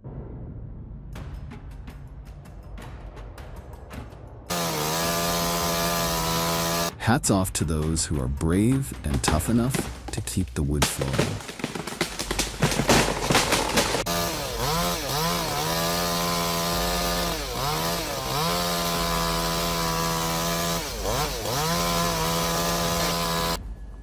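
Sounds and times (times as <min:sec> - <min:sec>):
chainsaw running at high revs: 0:04.5 - 0:06.9, 0:11.1 - 0:23.6
crackling clatter: 0:10.8 - 0:14.1.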